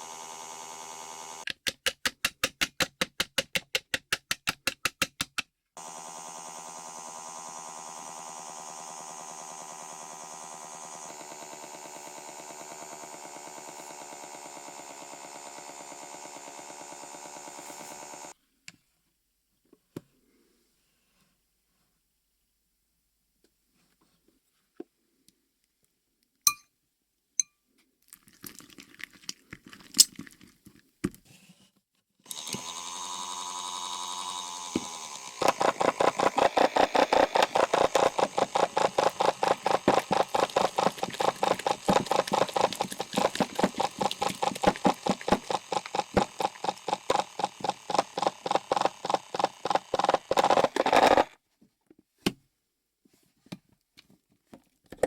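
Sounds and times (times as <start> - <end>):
mini washing machine motor: 0.0 - 1.5, 5.8 - 18.4, 32.3 - 51.4.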